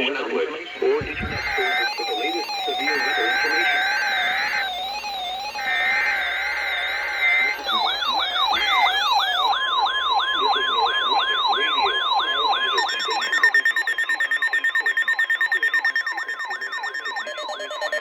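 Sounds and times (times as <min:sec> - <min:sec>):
steady tone: 0:00.7 - 0:09.6
rapidly pulsing buzzing tone: 0:00.7 - 0:18.0
sweeping siren-like tone: 0:00.7 - 0:18.0.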